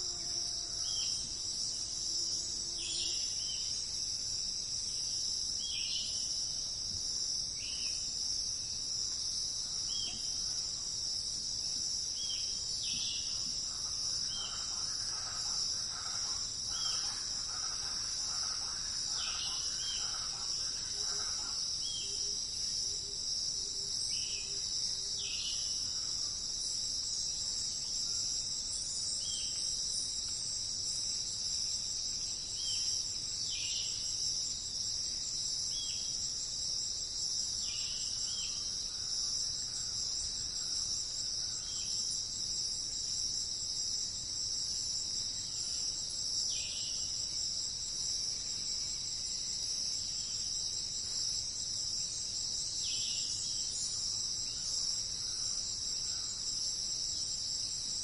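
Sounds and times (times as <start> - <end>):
high-pitched insect chorus: 0.0 - 58.0.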